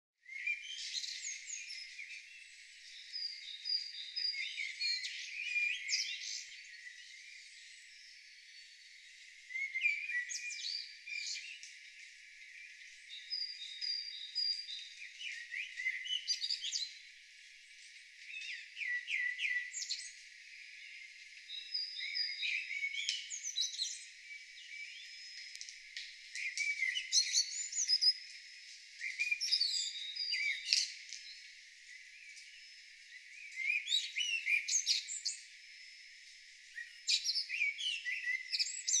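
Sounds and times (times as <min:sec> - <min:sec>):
songbirds singing: 0:00.2 - 0:39.0.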